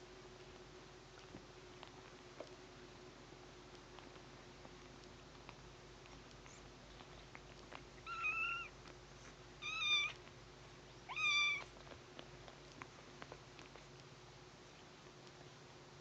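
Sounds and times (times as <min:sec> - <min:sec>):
kitten meowing: 0:08.1 - 0:08.7, 0:09.6 - 0:10.2, 0:11.1 - 0:11.7.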